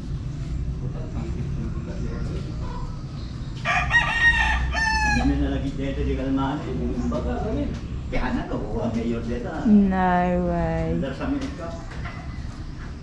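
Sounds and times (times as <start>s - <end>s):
rooster crowing: 3.6s - 5.4s.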